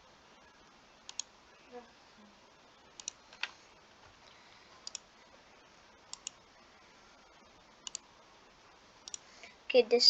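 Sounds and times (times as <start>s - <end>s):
low hiss: 0.0s - 10.0s.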